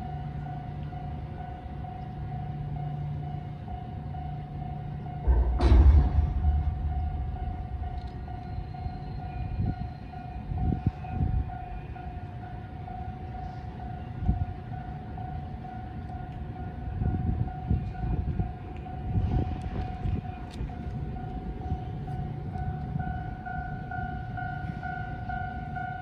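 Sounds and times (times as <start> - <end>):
level crossing warning alarm: 0.0 - 5.5, 6.5 - 26.0
low rumbles: 5.2 - 11.5.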